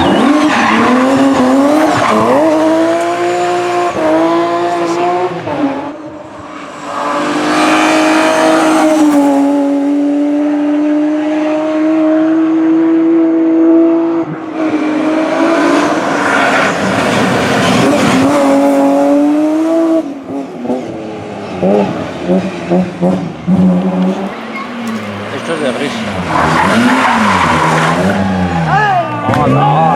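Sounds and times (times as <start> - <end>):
tyre squeal: 0.0 - 4.0, 24.0 - 29.9
rally car engines revving: 0.0 - 29.9.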